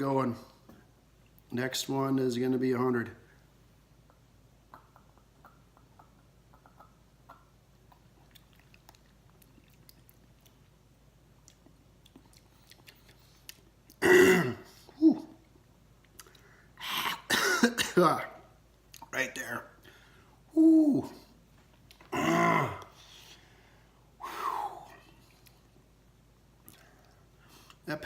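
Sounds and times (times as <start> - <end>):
man clearing throat: 14.0 - 14.8, 17.0 - 18.1, 22.1 - 22.8.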